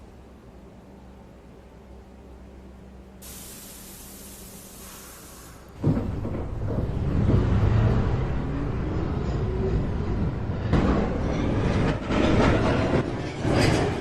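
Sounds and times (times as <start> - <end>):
air brakes hissing: 3.2 - 5.8
train rumbling: 3.2 - 14.0.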